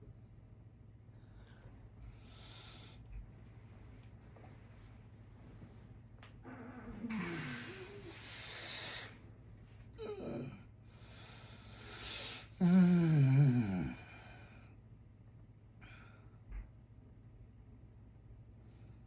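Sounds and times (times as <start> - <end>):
man snoring: 7.0 - 9.1, 11.8 - 14.5.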